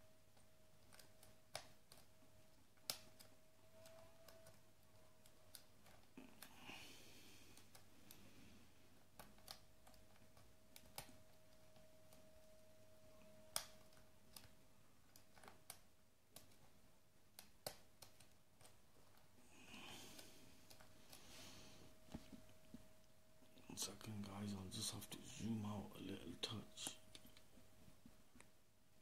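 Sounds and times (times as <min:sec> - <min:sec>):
faint steady tone: 0:00.0 - 0:15.3.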